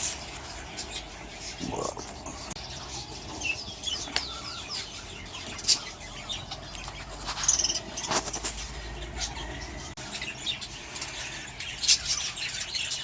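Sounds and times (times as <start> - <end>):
budgerigars chirping and chattering: 0.0 - 13.0.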